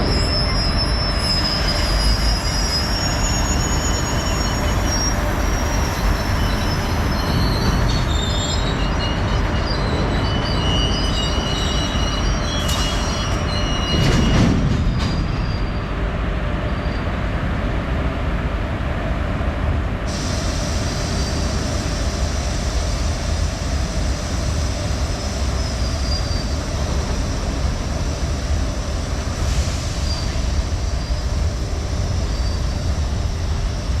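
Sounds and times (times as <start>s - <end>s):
train clunk: 0.0s - 4.8s, 11.1s - 16.0s
high-pitched wheel squeal: 0.0s - 14.4s
train wheels rumbling on rail: 0.0s - 34.0s.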